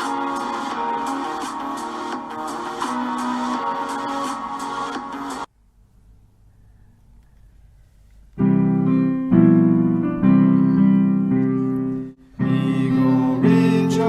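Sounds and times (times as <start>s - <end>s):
keyboard playing held chords: 0.0s - 5.5s, 8.4s - 14.0s
faint hum: 5.5s - 8.4s.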